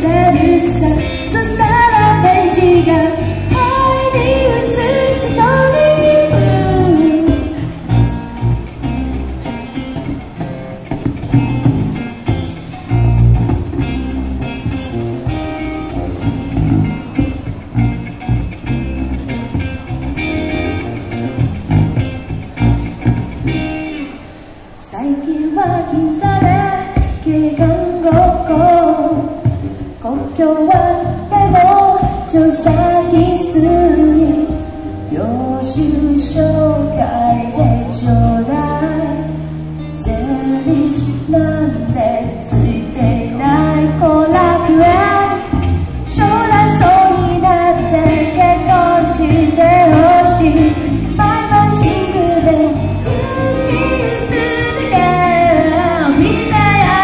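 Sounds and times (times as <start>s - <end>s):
woman singing pop song: 0.0s - 8.3s, 24.8s - 57.0s
guitar: 0.0s - 57.0s.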